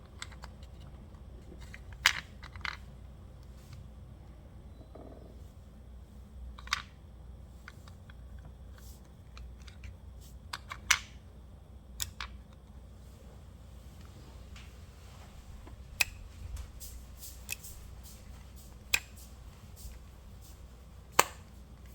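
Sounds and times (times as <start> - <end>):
small parts clicking and tapping: 0.0 - 3.8, 6.6 - 7.0, 7.6 - 11.3, 11.9 - 12.8, 15.6 - 21.9
steady low hum: 0.0 - 21.9.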